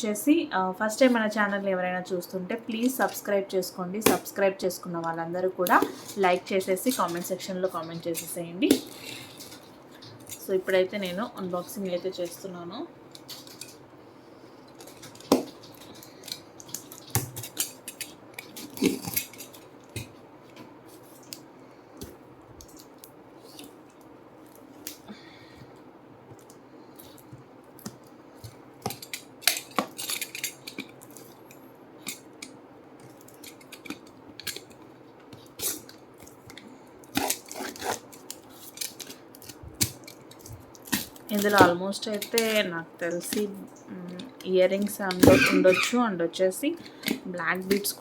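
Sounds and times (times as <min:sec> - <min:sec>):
packaging clicks and crinkling: 0:14.6 - 0:25.0, 0:26.3 - 0:45.2.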